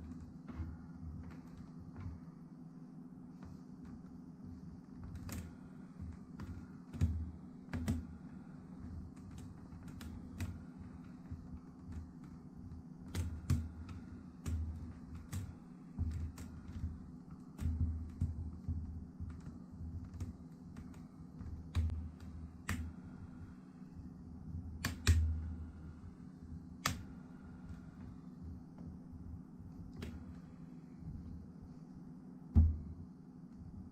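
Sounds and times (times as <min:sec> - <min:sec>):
steady low hum: 0:00.0 - 0:33.9
dull handling knocks: 0:32.5 - 0:33.0.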